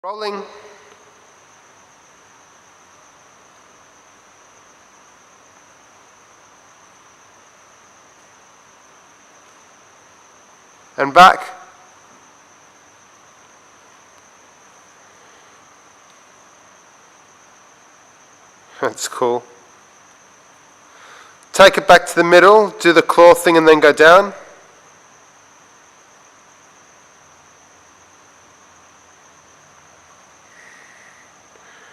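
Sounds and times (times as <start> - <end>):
faint hiss: 0.0 - 31.9
faint low hum: 0.0 - 31.9.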